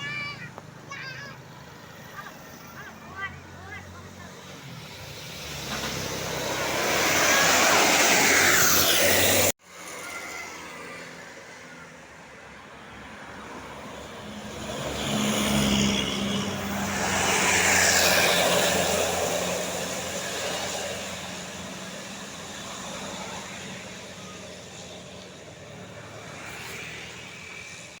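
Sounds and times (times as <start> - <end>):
bus passing by: 0.0 - 28.0.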